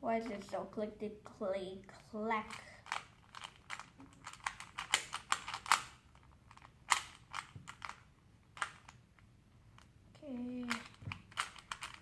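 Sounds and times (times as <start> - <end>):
puzzle cube plastic clicking: 2.4 - 9.9, 10.5 - 12.0.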